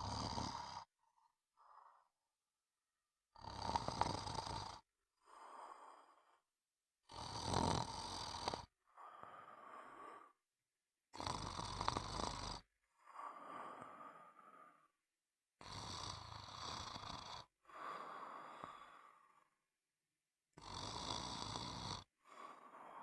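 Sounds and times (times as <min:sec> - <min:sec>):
loud snores: 0:00.0 - 0:00.9, 0:03.4 - 0:06.3, 0:07.0 - 0:10.4, 0:11.1 - 0:14.9, 0:15.6 - 0:19.6, 0:20.6 - 0:23.0
soft out-breath: 0:08.9 - 0:10.4, 0:13.0 - 0:14.9, 0:17.6 - 0:19.6, 0:22.3 - 0:23.0.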